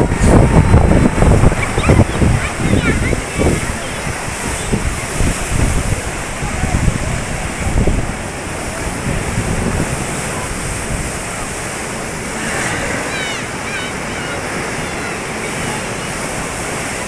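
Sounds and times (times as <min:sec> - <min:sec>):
sea waves breaking: 0:00.0 - 0:17.0
faint high wavering calls: 0:12.0 - 0:16.5.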